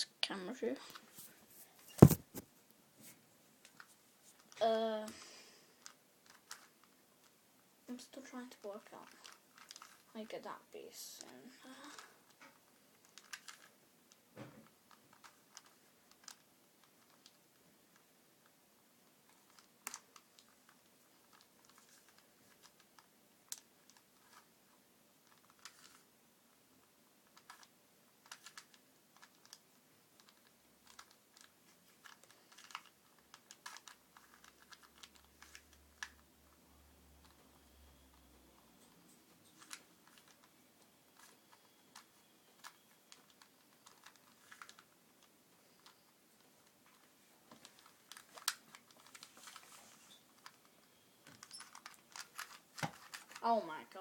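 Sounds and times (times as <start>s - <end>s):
plastic puzzle cube clicking: 5.8s - 6.9s, 8.9s - 10.1s, 13.0s - 14.2s, 14.9s - 17.4s, 19.3s - 24.5s, 25.2s - 26.1s, 27.2s - 36.2s, 39.5s - 40.5s, 41.2s - 49.6s, 51.3s - 53.5s.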